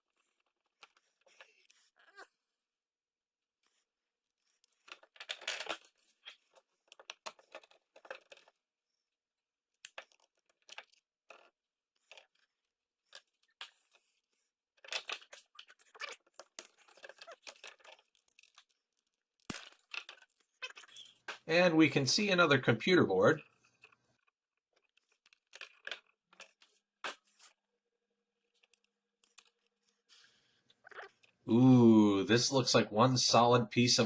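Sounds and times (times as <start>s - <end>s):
plastic scraping and crackling: 4.4s - 8.7s, 9.7s - 21.5s, 23.2s - 27.6s, 28.4s - 31.4s.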